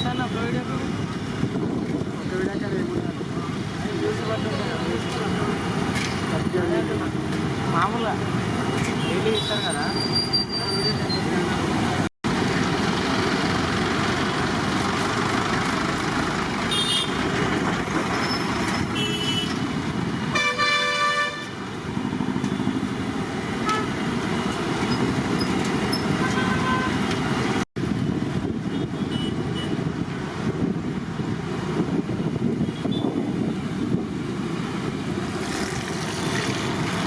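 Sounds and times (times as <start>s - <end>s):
street traffic noise: 0.0s - 37.0s
vehicle horns: 16.7s - 17.3s, 18.9s - 19.6s, 20.3s - 21.6s, 23.6s - 24.0s, 26.0s - 27.1s, 28.7s - 29.8s.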